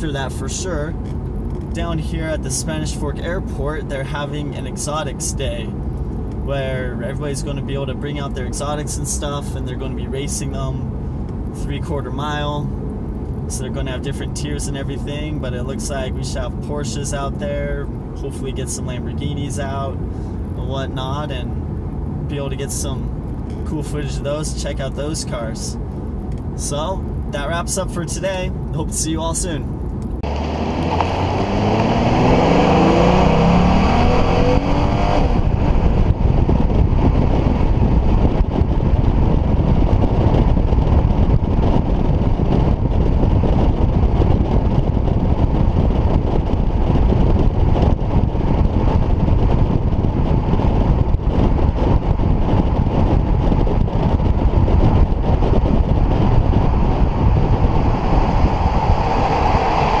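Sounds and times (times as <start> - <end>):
road and wind noise: 0.0 - 60.0
car engine accelerating: 29.9 - 38.8, 46.4 - 60.0.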